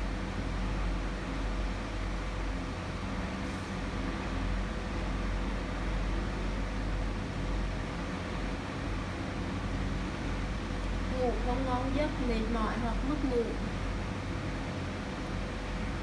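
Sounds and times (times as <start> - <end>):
faint constant hum: 0.0 - 16.0.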